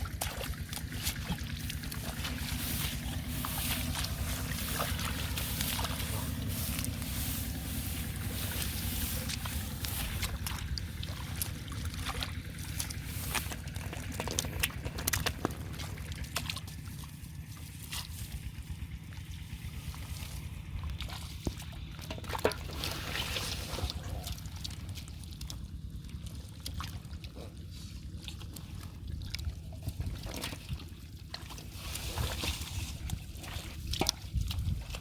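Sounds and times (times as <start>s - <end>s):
shallow water splashing and trickling: 0.0s - 35.0s
steady low rumble: 0.0s - 35.0s.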